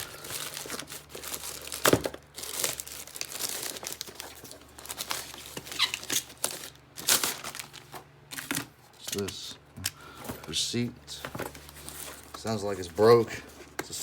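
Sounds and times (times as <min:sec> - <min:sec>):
packaging tearing and crinkling: 0:00.0 - 0:09.3.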